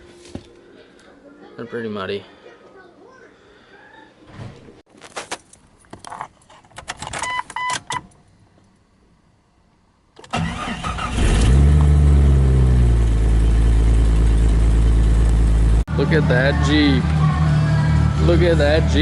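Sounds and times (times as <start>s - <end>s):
car engine starting and idling: 10.2s - 19.0s.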